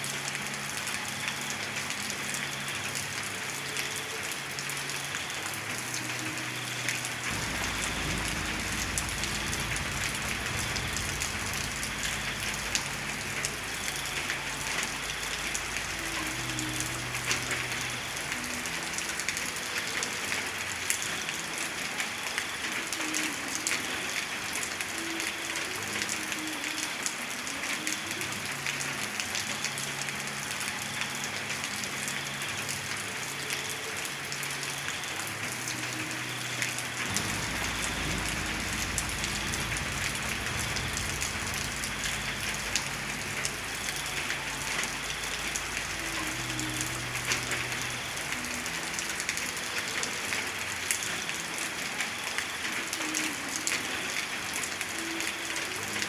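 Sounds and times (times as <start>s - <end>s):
heavy rain falling: 0.0s - 56.0s
low rumble: 7.3s - 13.0s, 37.1s - 43.0s.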